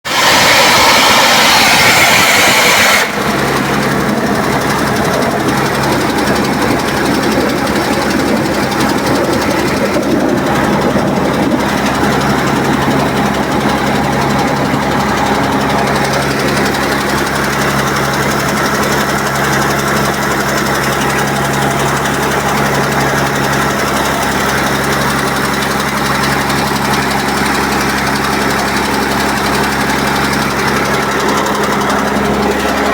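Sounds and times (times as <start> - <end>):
air compressor humming and hissing: 0.0 - 19.2.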